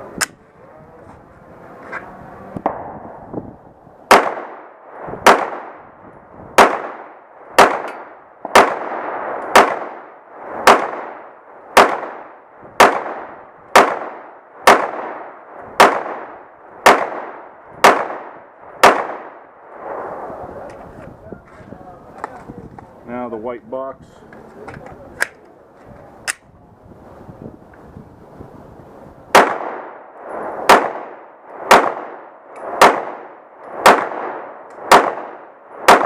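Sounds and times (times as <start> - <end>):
pistol shots: 4.1 - 5.8, 6.6 - 19.4, 29.3 - 36.0.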